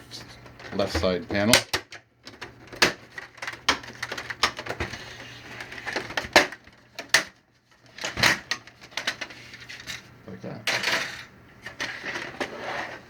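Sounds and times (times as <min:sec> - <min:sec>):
plastic panel scraping: 0:10.7 - 0:13.0.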